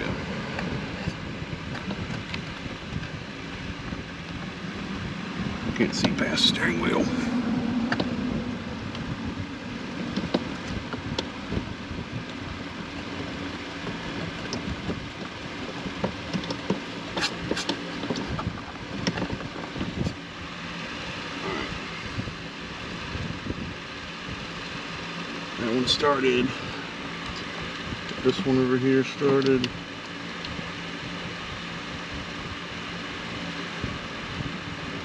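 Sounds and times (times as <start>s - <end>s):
steady background hum: 0.0s - 35.0s
light clicks and taps: 29.3s - 30.6s.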